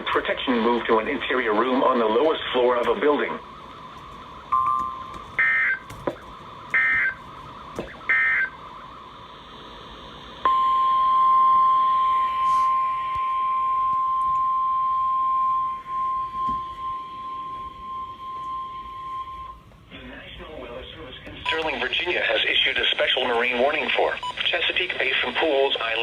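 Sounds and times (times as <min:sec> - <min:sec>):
single-pitch warning alarm tone: 0:01.2 - 0:19.7, 0:21.4 - 0:22.0.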